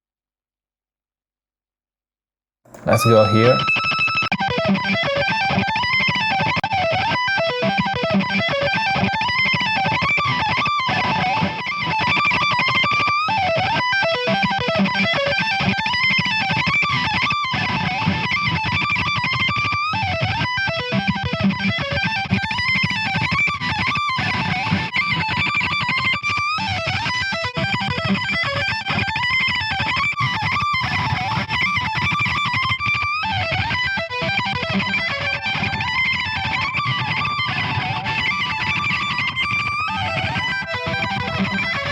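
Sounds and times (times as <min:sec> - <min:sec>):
distorted electric guitar solo: 0:02.8 - 0:03.7, 0:33.3 - 0:41.9.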